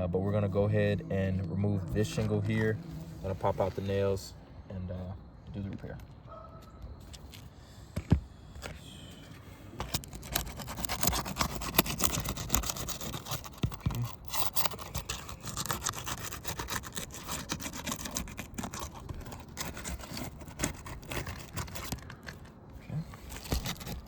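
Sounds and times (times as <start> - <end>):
metal tool rasping under shingles: 9.8 - 22.6, 23.2 - 24.0.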